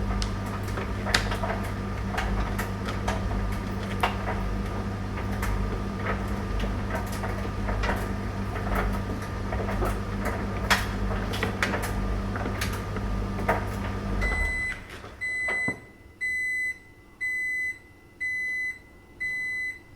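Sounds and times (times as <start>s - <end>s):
tumble dryer running: 0.0s - 15.9s.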